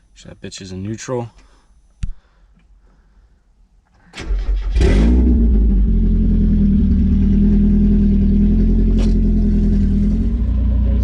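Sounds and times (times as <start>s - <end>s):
car engine starting and idling: 3.9s - 11.0s.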